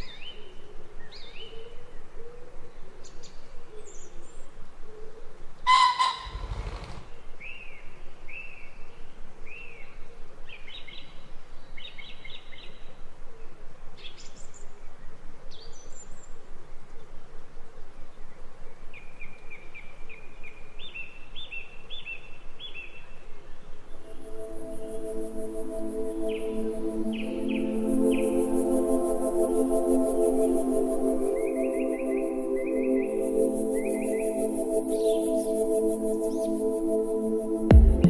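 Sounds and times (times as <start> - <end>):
steady background hiss: 23.7 - 38.0.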